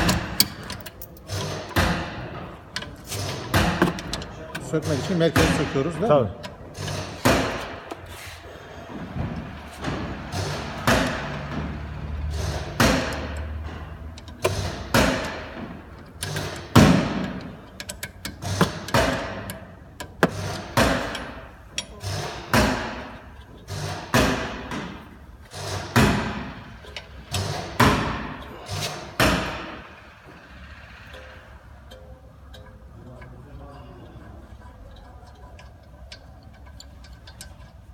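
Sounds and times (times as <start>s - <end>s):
hammer striking metal: 27.4s - 30.0s.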